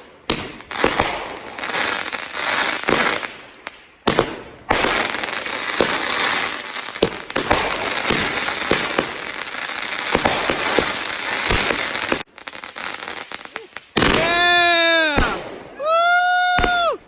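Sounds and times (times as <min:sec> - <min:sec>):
fireworks crackling and banging: 0:00.0 - 0:17.0.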